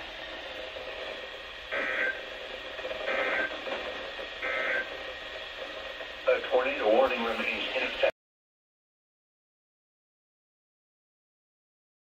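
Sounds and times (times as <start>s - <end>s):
steady broadcast hiss: 0.0s - 8.1s
two-tone data warbling bursts: 4.4s - 4.9s.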